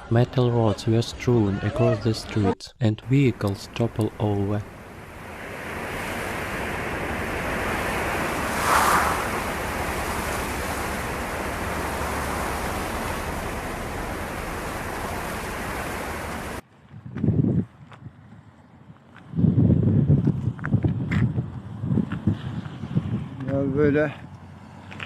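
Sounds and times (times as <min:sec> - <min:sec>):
steady rushing noise: 0:03.0 - 0:16.6.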